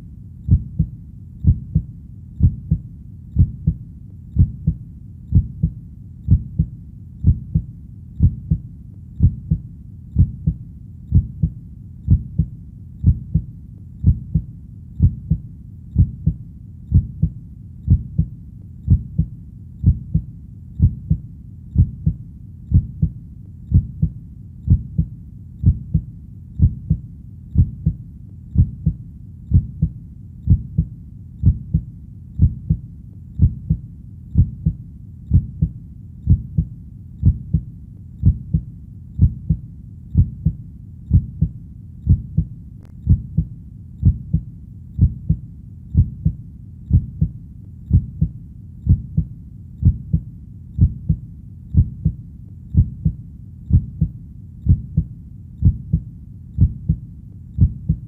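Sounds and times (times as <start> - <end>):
faint low rumble: 0.0 - 58.0
heartbeat thumps: 0.5 - 58.0.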